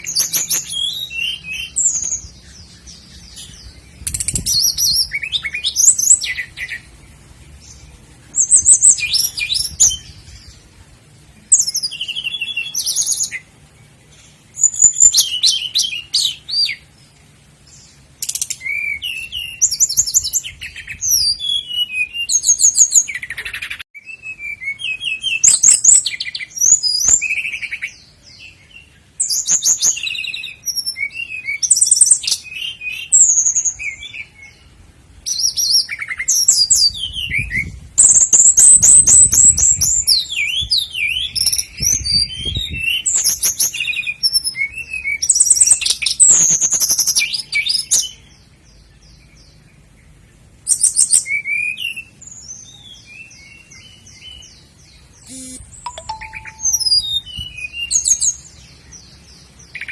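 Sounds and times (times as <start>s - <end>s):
nightingale singing: 0.0s - 59.9s.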